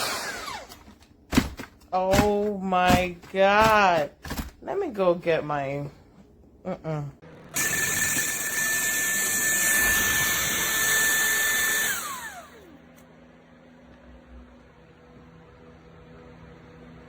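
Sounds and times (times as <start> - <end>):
vacuum cleaner motor whining: 0.0 - 1.0, 7.2 - 13.1.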